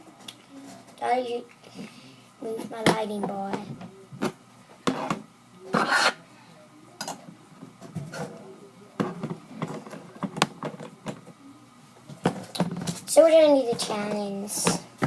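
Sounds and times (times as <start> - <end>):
short scrape on hard surface: 5.7 - 6.2.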